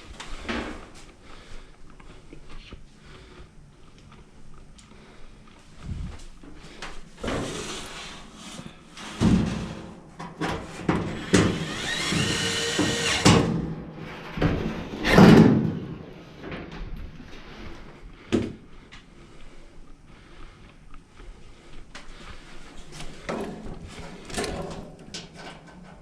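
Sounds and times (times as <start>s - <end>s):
metal parts knocking and clunking: 23.2s - 26.0s.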